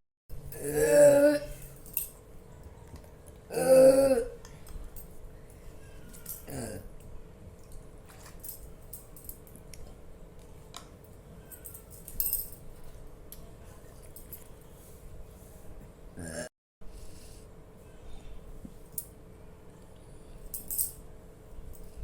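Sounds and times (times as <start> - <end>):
faint steady hum: 0.3 - 22.0
jangling rattle: 11.5 - 12.6.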